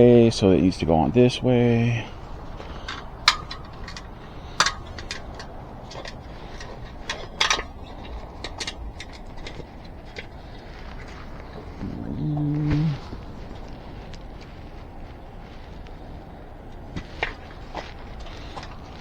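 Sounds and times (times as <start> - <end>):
bicycle wheel clicks and knocks: 2.5 - 11.5.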